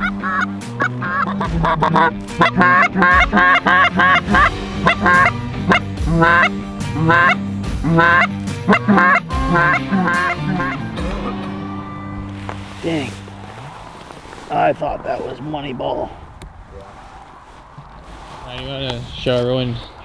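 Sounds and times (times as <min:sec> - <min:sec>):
goose honking and clucking: 0:00.0 - 0:14.2
low background music: 0:00.0 - 0:14.5.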